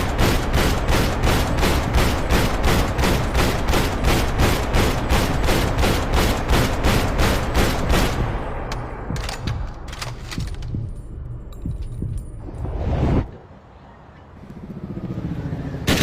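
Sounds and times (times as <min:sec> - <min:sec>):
rifle firing automatic burst: 0:00.0 - 0:08.3.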